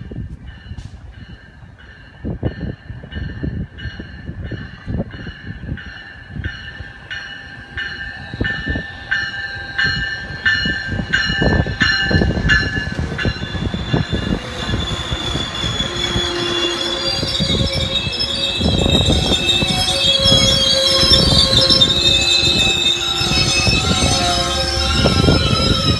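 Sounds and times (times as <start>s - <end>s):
train rumbling: 0.0s - 25.9s
train bell ringing: 0.4s - 25.9s
wheel squeal: 11.8s - 25.9s.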